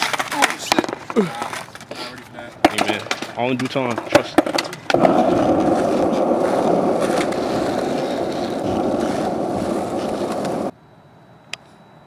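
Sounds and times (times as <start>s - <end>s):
skateboard wheels rolling on pavement: 0.0s - 10.8s.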